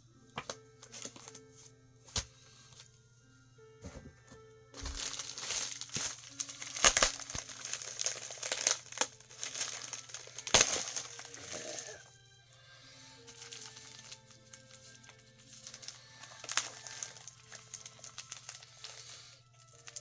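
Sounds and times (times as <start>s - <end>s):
packaging crinkling: 0.4s - 1.4s, 4.8s - 12.1s, 13.0s - 20.0s
sharp crackles: 4.8s - 12.0s.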